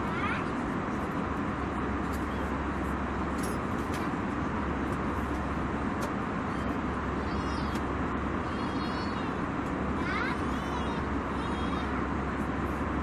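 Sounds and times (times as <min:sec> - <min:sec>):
faint high-pitched voice: 0:00.0 - 0:00.6, 0:10.0 - 0:12.1
airliner engine and air rush: 0:00.0 - 0:13.0.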